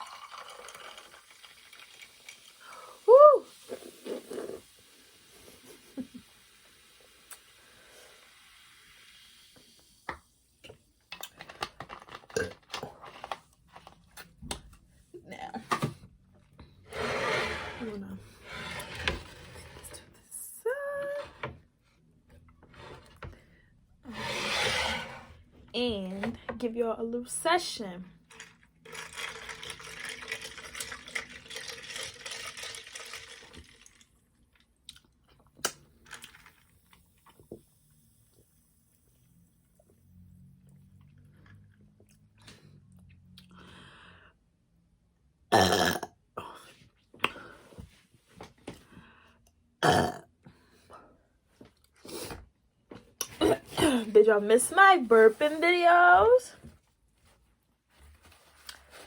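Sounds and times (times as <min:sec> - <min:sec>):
drink being poured: 0:00.0 - 0:04.9, 0:28.3 - 0:34.6, 0:36.0 - 0:38.4.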